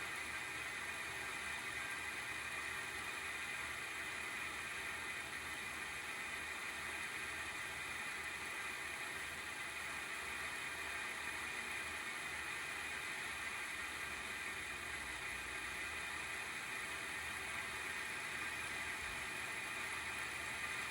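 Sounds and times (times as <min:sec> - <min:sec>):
cooling fan whirring hiss: 0:00.0 - 0:20.9.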